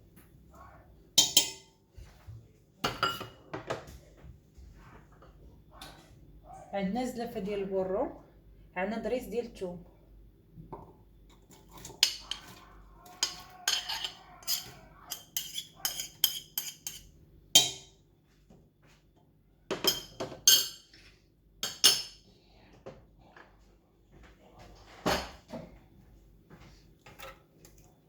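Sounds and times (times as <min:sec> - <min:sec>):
utensils and dishes clinking: 0:11.3 - 0:17.9, 0:19.7 - 0:20.9.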